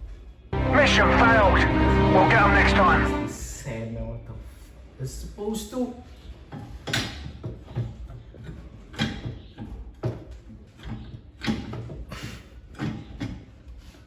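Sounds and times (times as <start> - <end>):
parts knocking and clunking: 12.7 - 13.5.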